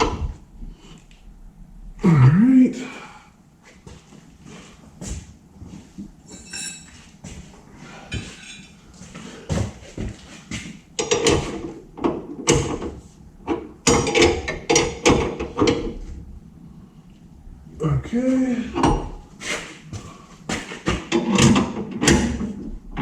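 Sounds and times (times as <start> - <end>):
metal tools clanking on metal: 6.3 - 7.1, 8.1 - 8.8.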